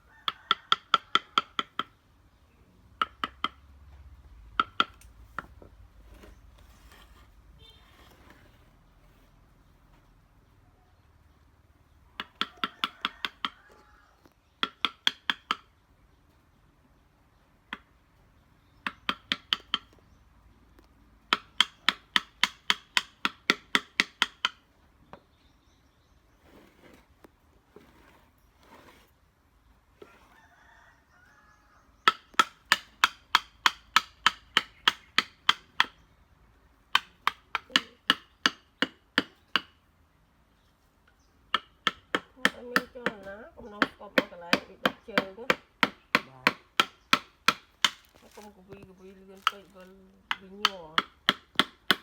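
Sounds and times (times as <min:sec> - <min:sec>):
mallet striking chisel: 0:18.8 - 0:19.9, 0:21.3 - 0:24.6, 0:32.0 - 0:36.0, 0:41.5 - 0:48.2, 0:50.3 - 0:52.0.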